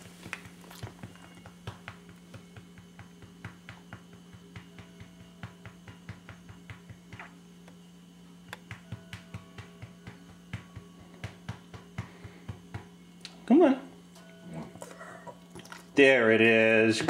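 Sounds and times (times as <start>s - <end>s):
steady low hum: 0.0s - 17.0s
hand patting a dog: 0.2s - 7.3s, 8.5s - 13.0s.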